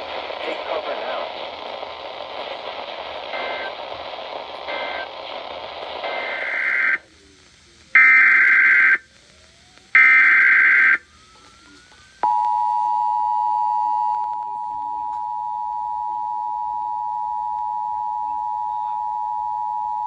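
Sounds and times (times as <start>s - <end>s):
radio static: 0.0s - 12.2s.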